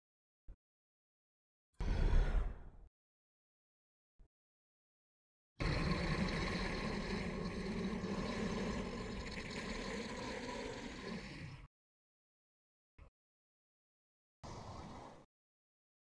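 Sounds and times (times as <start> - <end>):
rough dragon rumble: 5.6 - 11.6.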